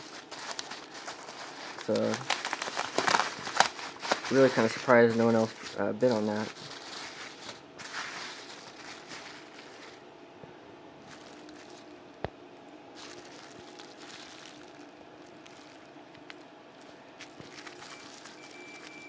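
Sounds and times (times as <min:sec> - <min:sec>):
packaging rustling: 0:00.0 - 0:10.1, 0:11.0 - 0:12.0, 0:13.0 - 0:19.0.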